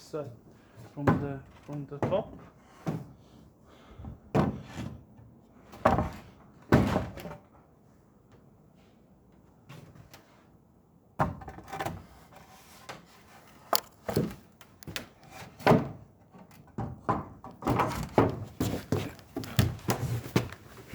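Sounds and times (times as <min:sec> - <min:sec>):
wooden knocks and thuds: 0:13.7 - 0:15.0, 0:16.8 - 0:20.9.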